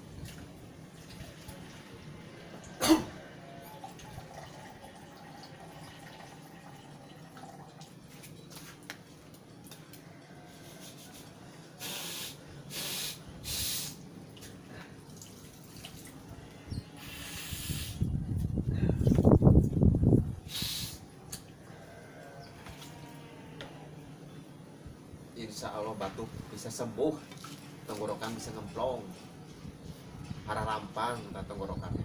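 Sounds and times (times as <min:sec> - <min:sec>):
water dripping and splashing: 0:00.0 - 0:02.0, 0:03.8 - 0:10.0, 0:14.2 - 0:16.3, 0:27.2 - 0:28.1
loud nasal expulsion: 0:11.8 - 0:14.0, 0:17.0 - 0:18.1, 0:20.4 - 0:21.1
short hissing breaths: 0:11.8 - 0:14.0, 0:17.0 - 0:18.1, 0:20.4 - 0:21.1.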